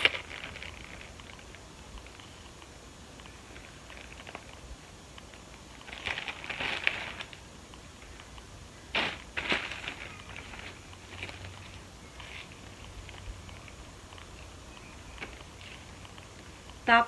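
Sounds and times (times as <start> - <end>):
plastic packaging crinkling: 0.0 - 2.2, 5.8 - 7.5, 9.0 - 12.8.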